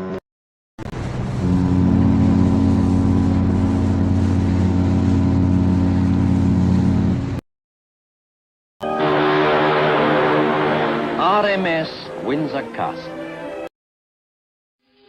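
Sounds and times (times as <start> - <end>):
ship's horn blast: 0.9 - 7.4, 8.8 - 13.4.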